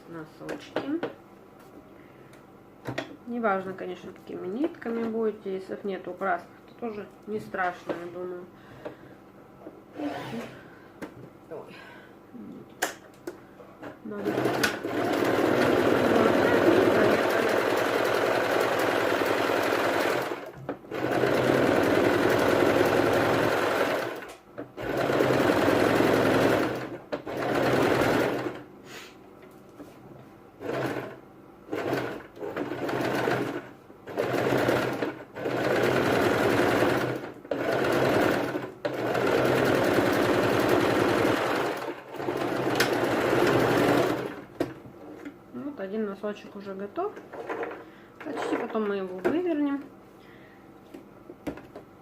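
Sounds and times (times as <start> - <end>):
sewing machine stitching: 14.1 - 28.6, 30.6 - 44.4.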